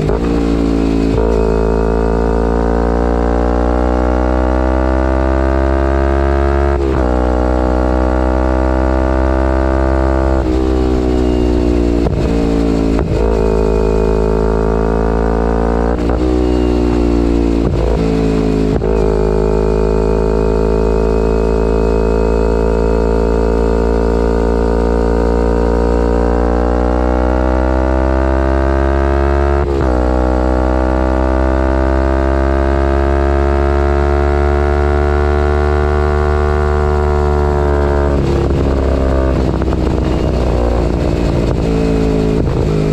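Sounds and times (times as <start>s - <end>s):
motorcycle engine shifting gears: 0.0s - 42.9s.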